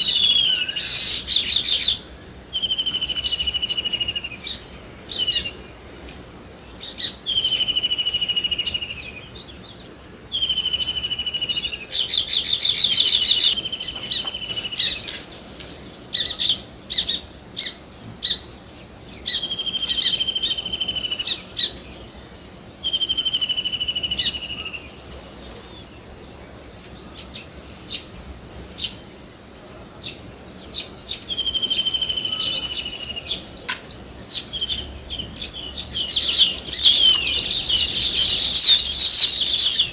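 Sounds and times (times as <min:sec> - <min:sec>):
small birds chirping: 0:00.0 - 0:39.9
buzzy trilled bird call: 0:36.0 - 0:39.9.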